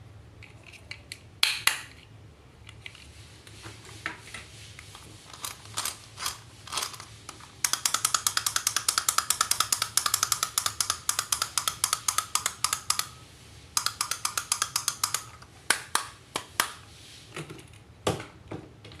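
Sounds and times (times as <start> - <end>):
rapid sharp clicks: 7.6 - 13.2, 13.8 - 16.7.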